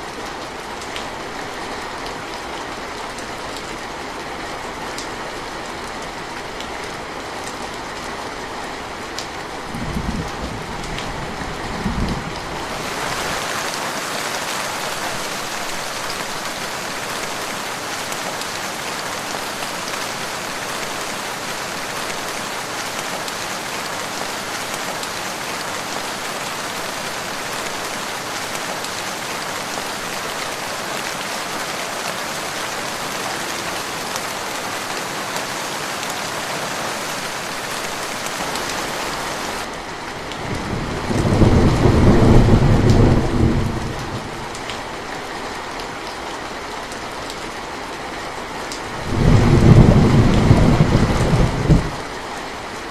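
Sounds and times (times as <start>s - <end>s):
steady rain hiss: 0.0s - 52.9s
deep thunder rumble: 40.5s - 44.4s, 49.0s - 52.0s.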